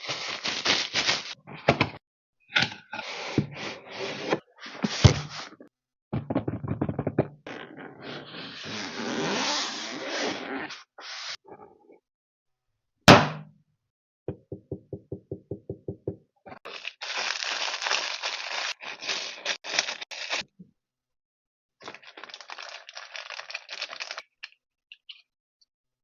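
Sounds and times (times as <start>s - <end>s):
packaging scraping and rustling: 16.7s - 20.4s.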